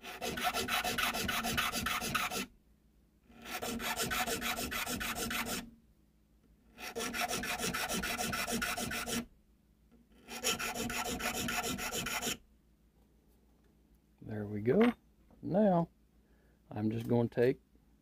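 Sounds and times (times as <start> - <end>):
file rasping on metal: 0.0 - 2.5, 3.3 - 5.7, 6.7 - 9.3, 10.2 - 12.4.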